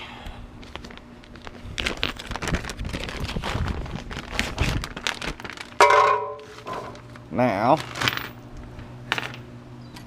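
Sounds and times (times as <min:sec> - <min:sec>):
ringing metal clank: 0:05.8 - 0:06.9.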